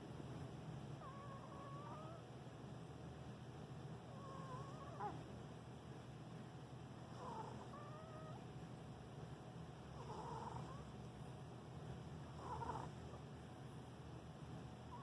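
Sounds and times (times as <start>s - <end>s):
cat snoring rumble: 1.0s - 2.2s, 4.1s - 5.2s, 7.0s - 8.4s, 9.9s - 10.9s, 12.3s - 13.2s.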